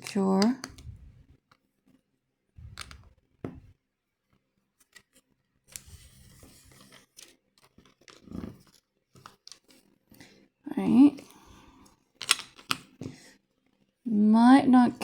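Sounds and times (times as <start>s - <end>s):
plastic building bricks clicking: 0.0s - 0.9s, 2.6s - 3.2s, 7.0s - 9.9s, 12.2s - 13.0s.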